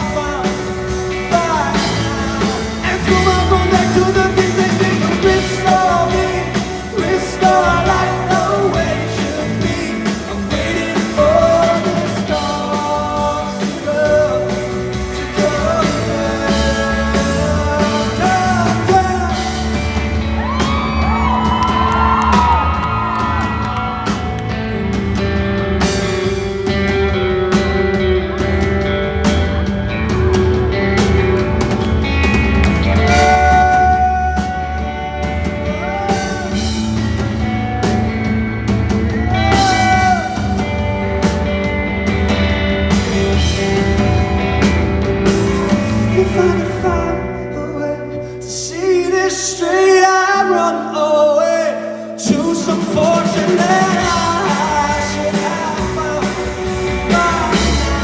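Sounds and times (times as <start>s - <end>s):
man singing long held notes: 0.0s - 19.8s
guitar lead line bending: 0.0s - 47.4s
live rock band: 0.0s - 58.0s.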